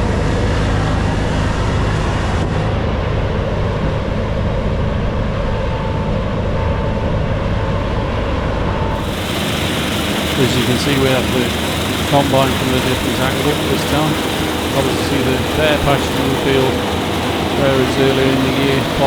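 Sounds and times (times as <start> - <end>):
combine harvester running: 8.9 - 19.0.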